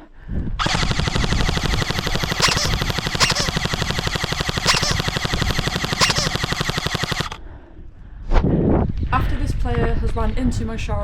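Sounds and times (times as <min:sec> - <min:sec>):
toy gun full-auto burst: 0:00.6 - 0:07.4.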